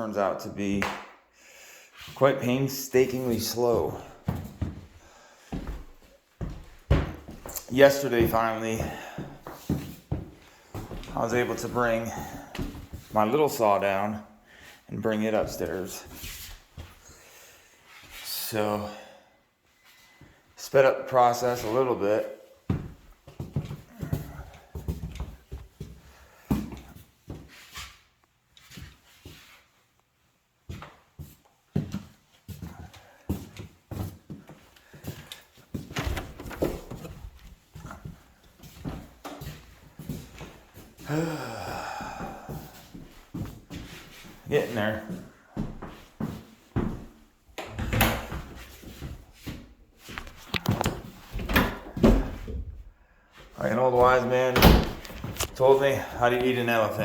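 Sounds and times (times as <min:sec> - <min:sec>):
floorboards knocking and thumping: 0:05.6 - 0:07.6.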